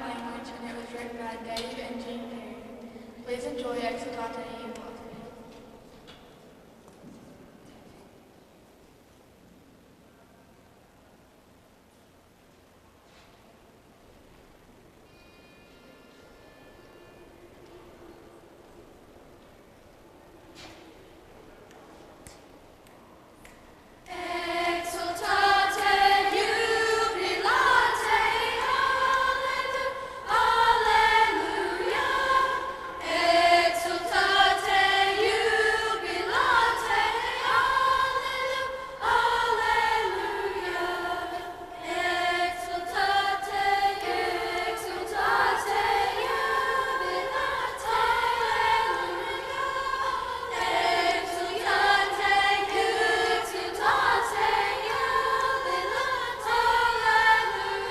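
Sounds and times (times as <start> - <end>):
choir singing: 24.0 - 57.9.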